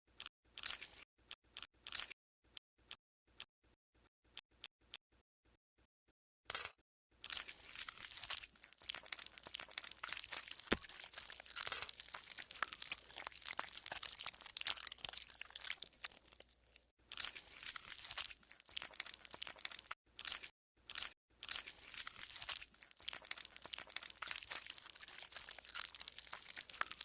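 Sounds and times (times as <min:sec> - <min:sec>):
slime crackling and squelching: 0:07.3 - 0:27.0.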